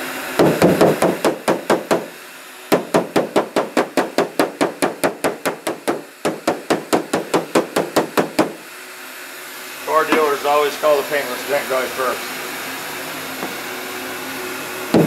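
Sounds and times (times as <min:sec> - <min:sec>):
hammer tapping on metal hood: 0:00.4 - 0:02.1, 0:02.7 - 0:08.6.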